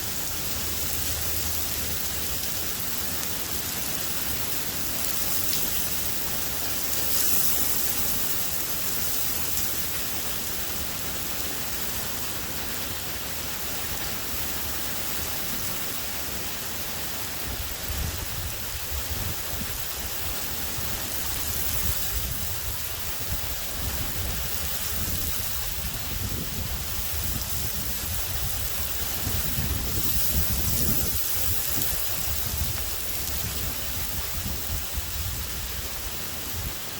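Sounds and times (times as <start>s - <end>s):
heavy rain falling: 0.0s - 36.9s
low thunder rumble: 21.6s - 36.8s.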